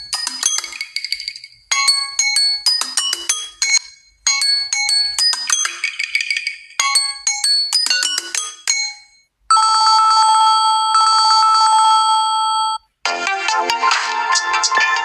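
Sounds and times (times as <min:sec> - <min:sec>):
chime-like ringtone melody: 0:00.0 - 0:12.8
steady buzzing ringtone: 0:06.8 - 0:12.8.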